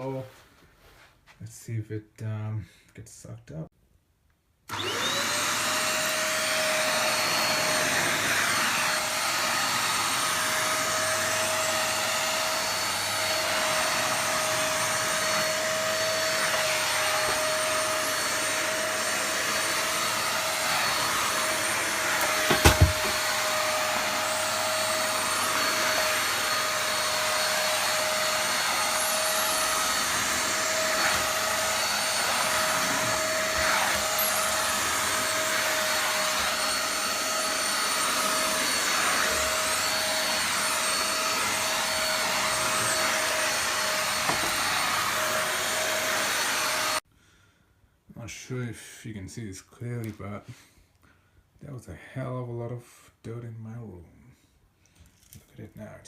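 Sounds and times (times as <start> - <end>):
vacuum cleaner whining: 4.7 - 47.1.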